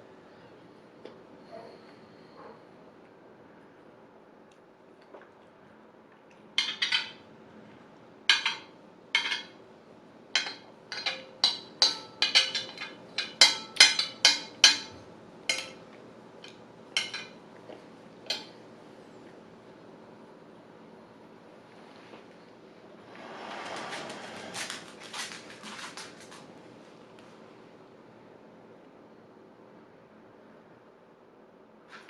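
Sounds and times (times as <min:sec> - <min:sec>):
cutlery clinking on a plate: 0:06.6 - 0:07.2, 0:08.3 - 0:09.6, 0:10.4 - 0:15.8, 0:16.5 - 0:17.4.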